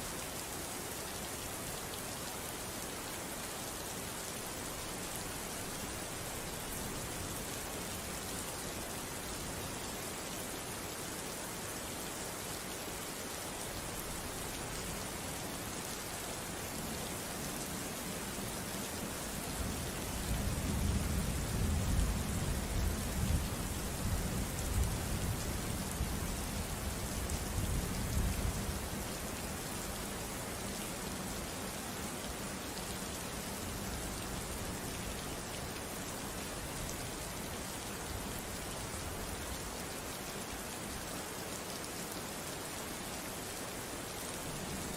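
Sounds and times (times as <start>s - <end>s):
steady rain falling: 0.0s - 44.9s
low rumble of thunder: 20.3s - 26.3s.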